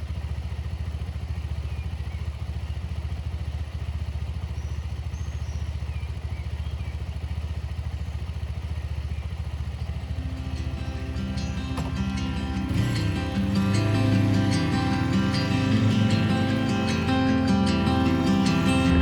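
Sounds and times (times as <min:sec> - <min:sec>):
motorcycle engine running: 0:00.0 - 0:19.0
music: 0:10.2 - 0:19.0.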